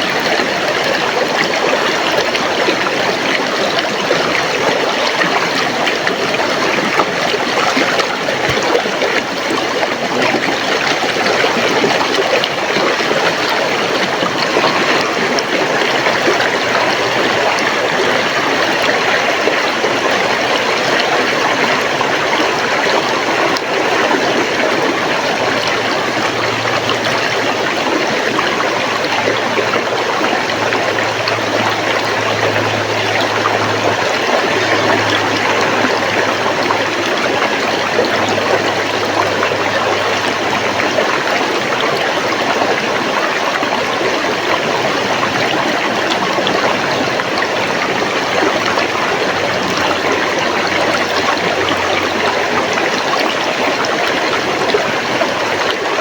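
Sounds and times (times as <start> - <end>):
river water flowing: 0.0 - 56.0.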